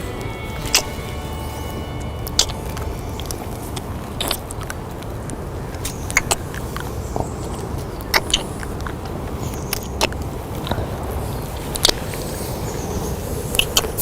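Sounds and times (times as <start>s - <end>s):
steady background noise: 0.0s - 14.0s
wet kissing lip smacks: 2.3s - 3.4s, 8.1s - 8.7s, 13.5s - 14.0s.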